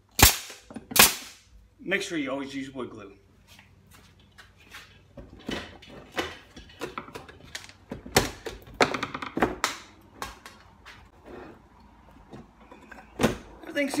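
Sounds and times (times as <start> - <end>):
wooden pieces knocking: 6.2 - 10.6.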